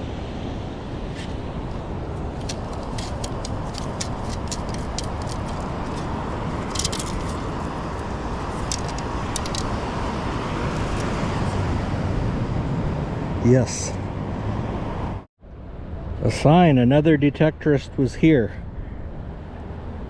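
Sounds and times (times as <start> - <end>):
wind: 0.0 - 20.0
pebbles rattling in metal scoop: 2.4 - 7.5.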